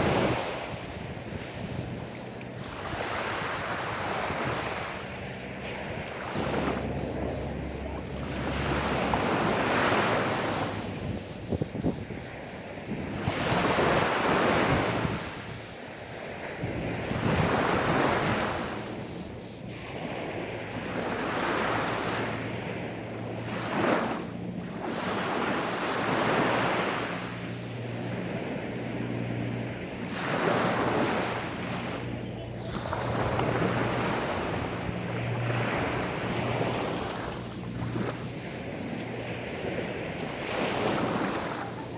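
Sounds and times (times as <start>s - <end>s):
sea waves washing onto beach: 0.0s - 41.9s.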